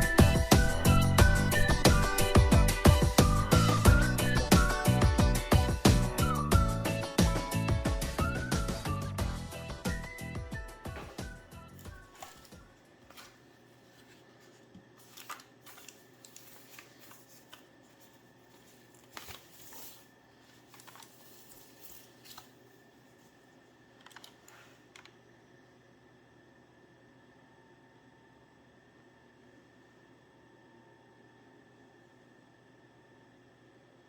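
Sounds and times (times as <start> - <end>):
packaging rustling: 0.0 - 2.6, 11.0 - 22.7
background music: 0.0 - 12.3.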